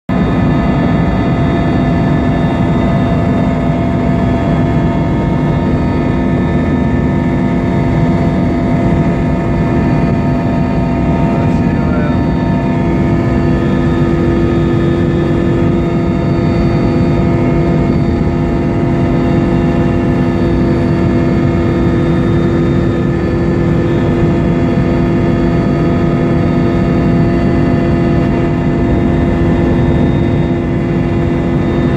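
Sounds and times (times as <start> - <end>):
aircraft engines droning: 0.1 - 31.9.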